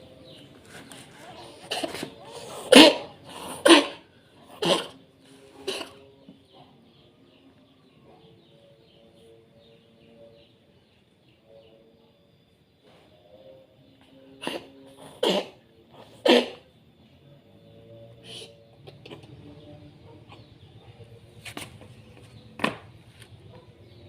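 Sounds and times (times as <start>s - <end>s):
cat coughing: 1.6s - 5.0s, 5.6s - 6.1s, 14.4s - 16.7s.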